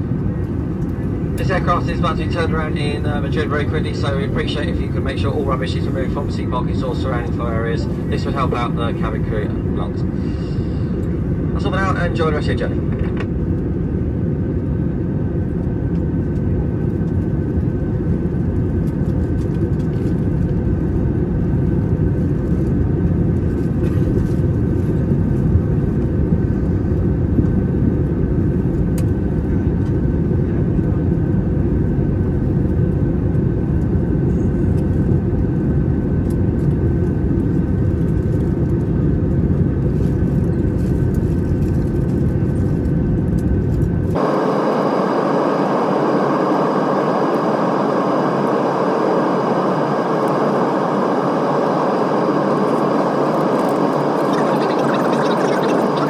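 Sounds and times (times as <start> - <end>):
aircraft engines and airflow roar: 0.0 - 56.0
faint steady whine: 0.2 - 12.8, 44.2 - 56.0.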